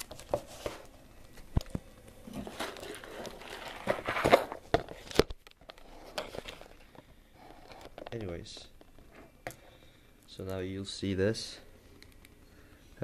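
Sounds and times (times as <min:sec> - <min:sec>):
rustling: 0:00.0 - 0:09.4.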